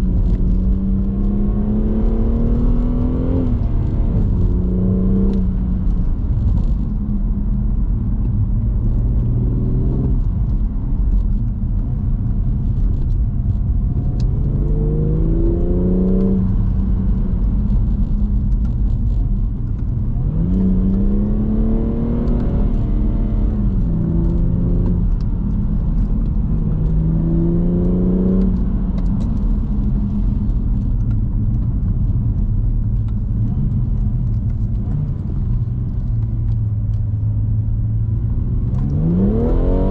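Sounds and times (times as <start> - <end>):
car engine revving: 0.0 - 7.1, 13.6 - 31.0, 37.4 - 39.9
low road rumble: 0.0 - 39.9.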